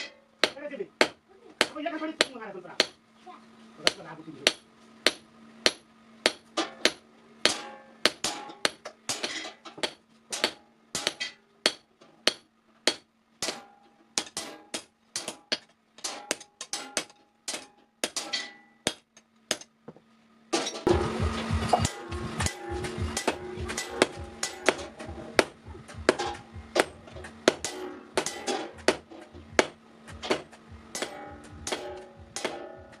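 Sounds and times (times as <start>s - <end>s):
hammer striking steel on anvil: 0.0s - 3.0s, 3.8s - 19.7s, 20.6s - 33.0s
low hum: 20.7s - 33.0s.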